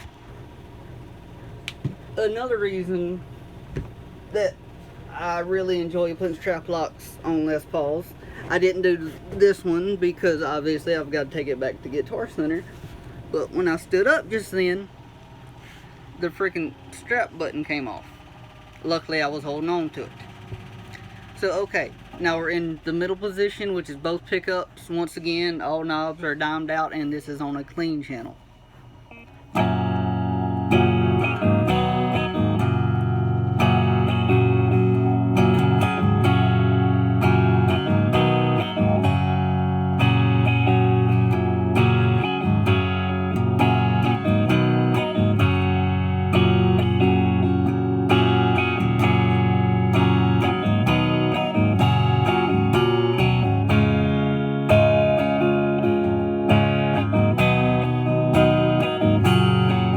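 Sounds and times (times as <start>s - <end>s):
clean electric guitar strumming: 0.0s - 59.9s.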